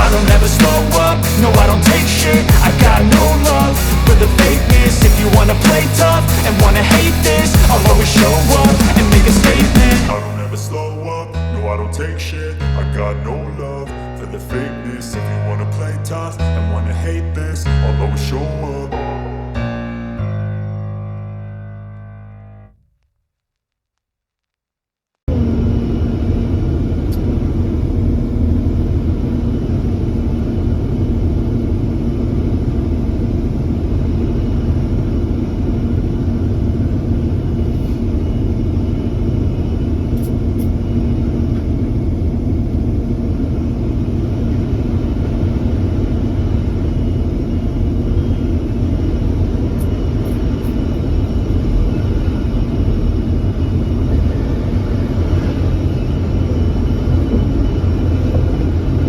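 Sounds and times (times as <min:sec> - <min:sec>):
diesel engine rumbling: 0:00.0 - 0:11.9.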